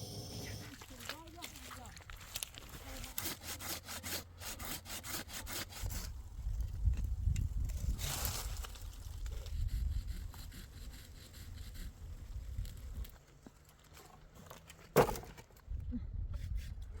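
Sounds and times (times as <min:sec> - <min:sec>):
hand saw cutting wood: 0:00.0 - 0:00.8, 0:02.9 - 0:06.1.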